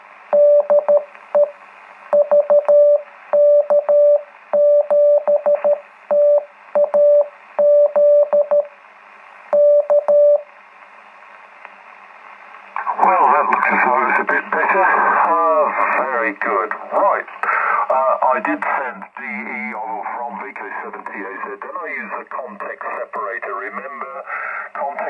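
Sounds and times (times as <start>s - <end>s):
radio band hiss: 1.1s - 2.1s, 8.8s - 9.6s, 10.5s - 25.0s
morse code tone: 9.5s - 10.4s.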